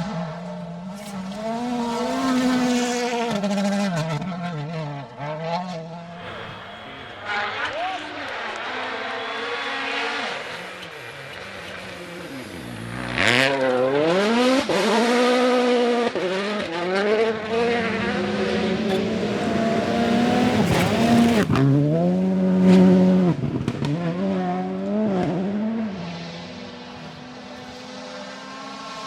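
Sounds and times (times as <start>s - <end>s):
rally car engine revving: 0.0s - 29.0s.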